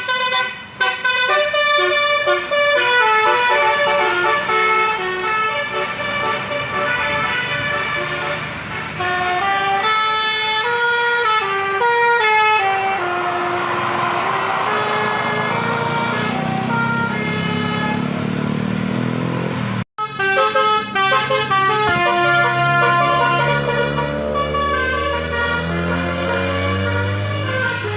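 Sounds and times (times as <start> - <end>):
multi-tone air horn tune: 0.0 - 18.2, 20.0 - 27.9.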